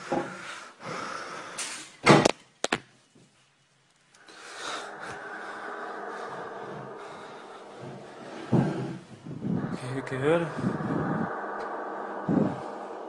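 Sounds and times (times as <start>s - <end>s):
drone of held tones: 4.2s - 13.0s.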